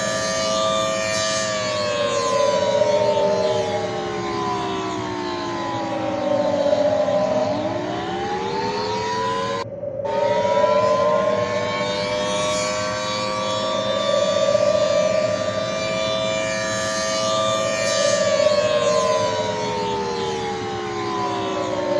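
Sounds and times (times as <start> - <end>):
warning siren gliding tones: 0.0 - 21.9
steady lower tone: 9.3 - 16.4.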